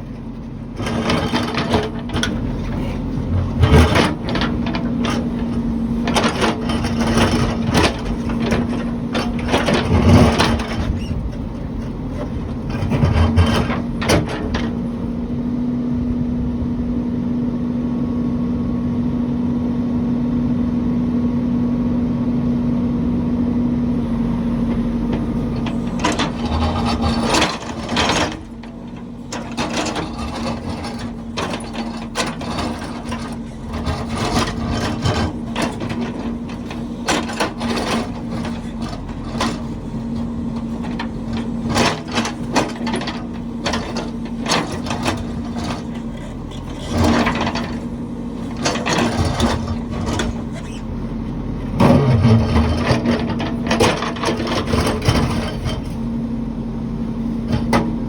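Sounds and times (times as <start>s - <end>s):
heavy machine engine running: 0.0s - 58.0s
knocks clanks and scrapes of gear: 0.4s - 14.9s, 24.6s - 56.0s.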